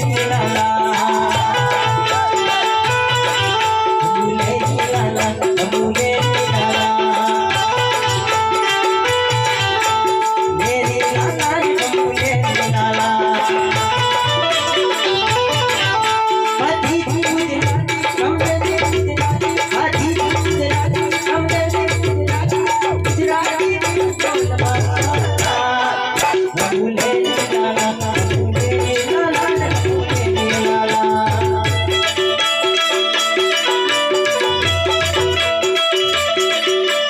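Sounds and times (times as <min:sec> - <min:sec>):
rattling percussion: 0:00.0 - 0:37.0
steady drum beat: 0:00.0 - 0:37.0
folk music: 0:13.9 - 0:16.9.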